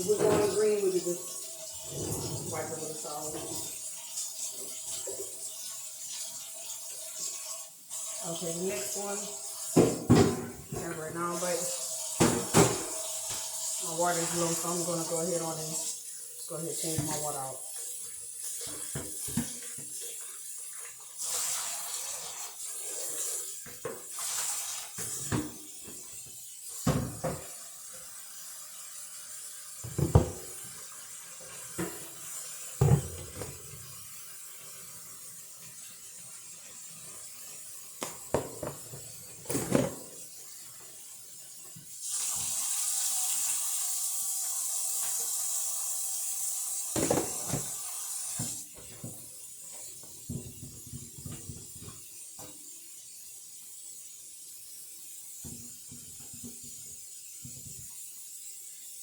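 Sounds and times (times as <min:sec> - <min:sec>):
knocks and clunks in sink: 0:00.0 - 0:00.7, 0:09.8 - 0:11.0, 0:12.2 - 0:13.0, 0:16.8 - 0:17.5, 0:18.6 - 0:20.0, 0:26.8 - 0:27.5, 0:29.8 - 0:30.6, 0:32.8 - 0:33.9, 0:38.0 - 0:40.2, 0:47.0 - 0:47.8
tap water running: 0:00.0 - 0:59.0.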